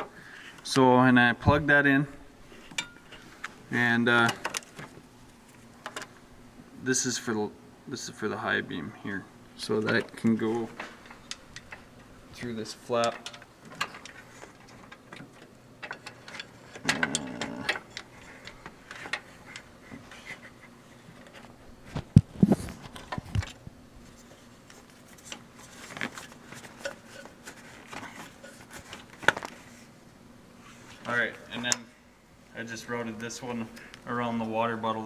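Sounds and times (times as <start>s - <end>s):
wire harness clicks and rustles: 9.7s - 29.8s.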